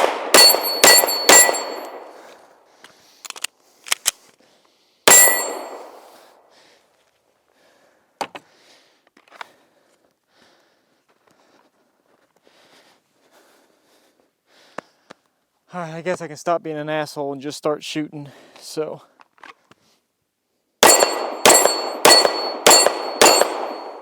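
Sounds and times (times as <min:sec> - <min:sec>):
pistol shots: 0:00.0 - 0:02.2, 0:05.1 - 0:06.1, 0:20.8 - 0:24.0
metallic ring of steel target: 0:00.3 - 0:02.1, 0:05.1 - 0:06.1, 0:20.8 - 0:24.0.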